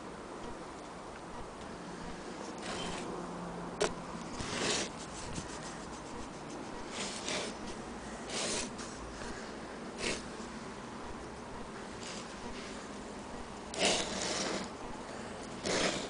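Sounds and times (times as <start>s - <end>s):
brief rubbing sounds: 4.4s - 7.6s.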